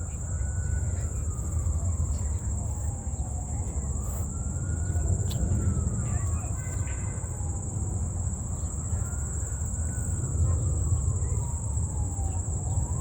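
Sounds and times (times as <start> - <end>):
faint siren wailing: 0.0 - 13.0
insects droning: 0.0 - 13.0.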